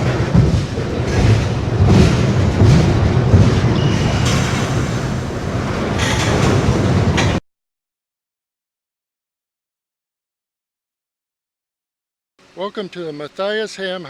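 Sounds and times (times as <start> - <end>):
train rolling past: 0.0 - 7.4.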